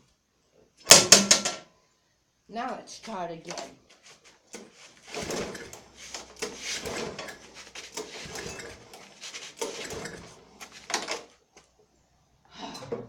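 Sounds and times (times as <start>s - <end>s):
starter cord pulls: 4.5s - 11.3s
engine turning over: 5.0s - 11.3s.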